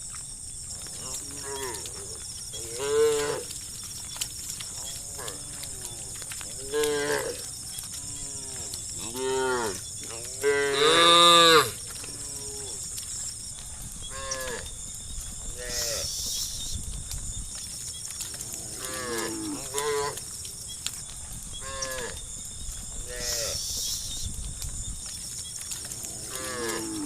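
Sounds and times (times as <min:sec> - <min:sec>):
cattle mooing: 0:04.8 - 0:12.8, 0:26.0 - 0:27.0
high-pitched hiss: 0:15.6 - 0:16.9, 0:23.0 - 0:25.4.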